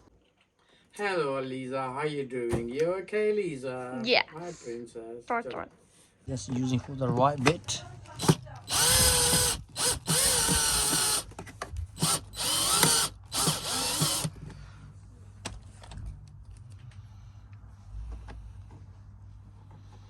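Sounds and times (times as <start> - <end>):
power drill whirring: 8.1 - 11.4, 12.0 - 14.4.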